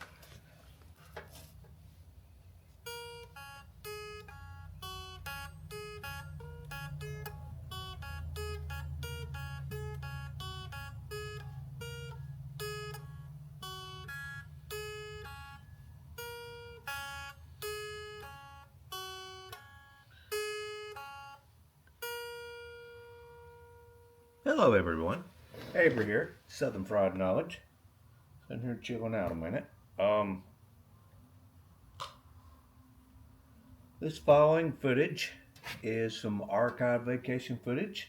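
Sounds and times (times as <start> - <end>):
acoustic guitar plucked melody: 2.8 - 25.2.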